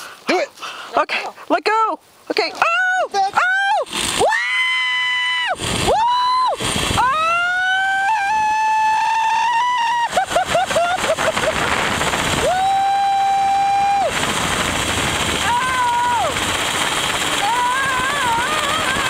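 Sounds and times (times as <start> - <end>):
woman yelping: 2.6 - 6.4
woman screaming: 2.6 - 11.0, 12.4 - 14.2, 15.4 - 16.4, 17.4 - 19.0
wind rushing on microphone: 5.4 - 19.0.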